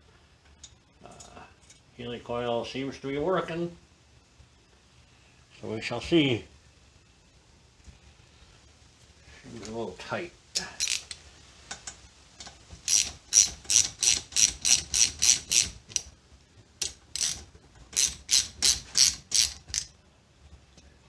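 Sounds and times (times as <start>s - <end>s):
ratchet wrench clicking: 10.8s - 11.2s, 12.8s - 16.1s, 16.8s - 20.0s.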